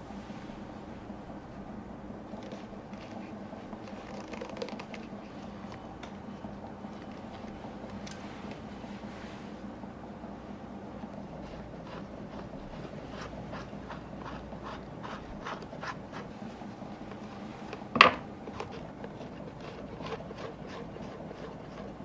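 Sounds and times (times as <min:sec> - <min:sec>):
rubbing strokes on a shoe: 0:11.3 - 0:17.7.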